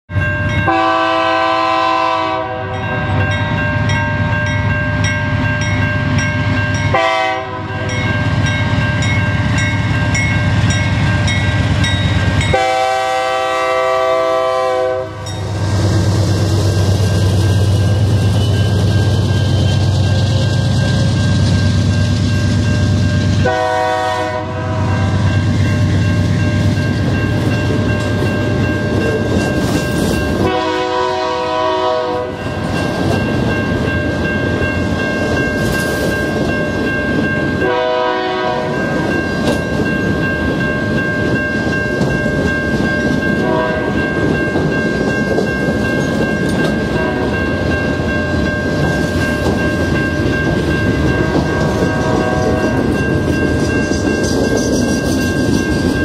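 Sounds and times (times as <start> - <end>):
locomotive chime horn: 0.1 - 5.1, 6.1 - 15.7, 23.3 - 29.5, 30.2 - 32.9, 37.2 - 40.4, 43.2 - 44.8, 45.8 - 48.9, 49.5 - 55.4
train cars clattering on rails: 25.2 - 56.0.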